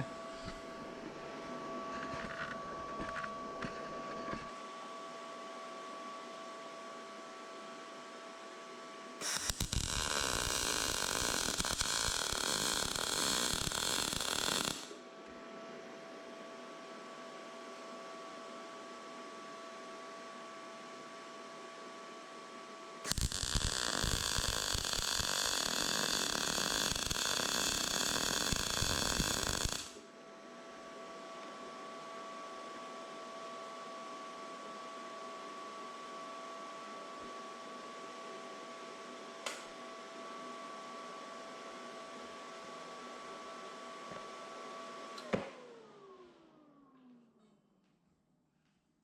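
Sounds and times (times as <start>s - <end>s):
faint hum: 0.0s - 40.2s
welding arc crackling sizzle: 9.2s - 15.0s, 23.1s - 30.0s.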